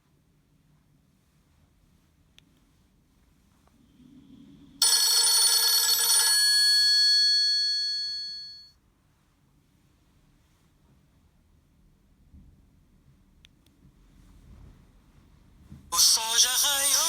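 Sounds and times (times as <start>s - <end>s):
bell-like phone ringtone chime: 4.8s - 8.7s.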